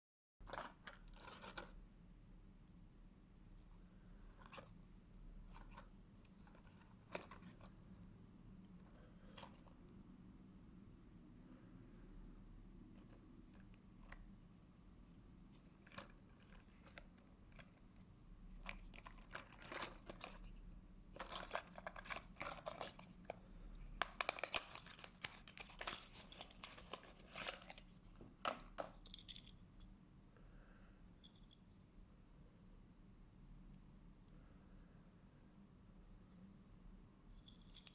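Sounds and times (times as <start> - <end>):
packaging crinkling and tearing: 24.0 - 27.9.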